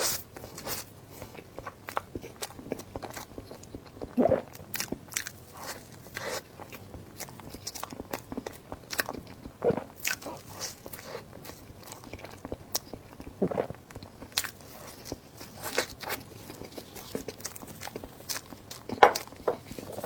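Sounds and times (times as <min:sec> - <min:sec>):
crunchy bites and chewing: 0:04.7 - 0:20.0.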